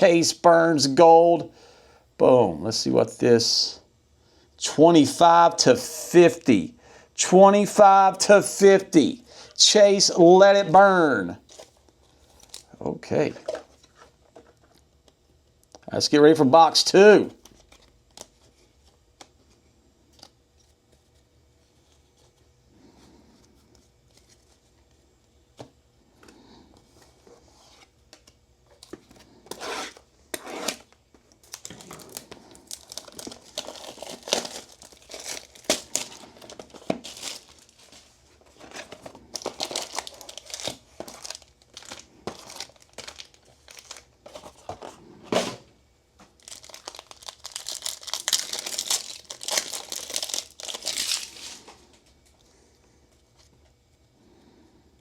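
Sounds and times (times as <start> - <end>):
card wrappers tearing and crinkling: 28.8 - 44.9, 46.3 - 51.8.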